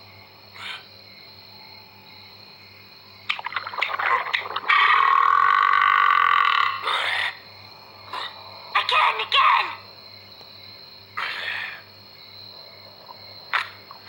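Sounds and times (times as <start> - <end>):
stomach growling: 3.3 - 7.3.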